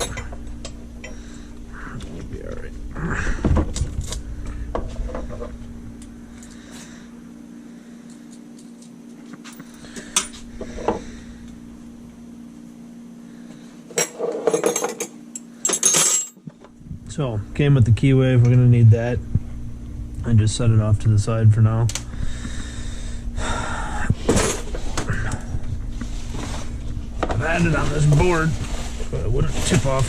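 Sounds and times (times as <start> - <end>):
steady low hum: 0.0 - 30.0
metal parts clinking and rattling: 14.0 - 16.4.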